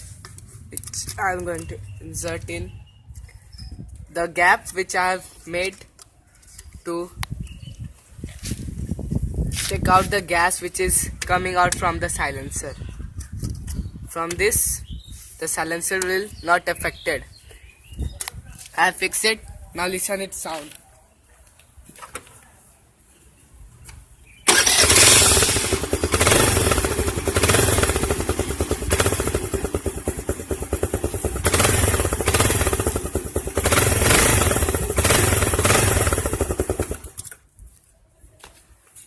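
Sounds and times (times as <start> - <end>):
scooter engine revving: 24.5 - 37.2.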